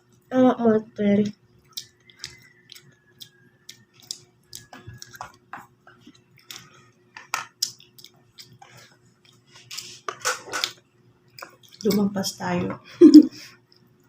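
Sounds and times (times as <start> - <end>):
chewing and mouth clicks: 1.2 - 9.9, 10.6 - 12.1, 13.6 - 14.0.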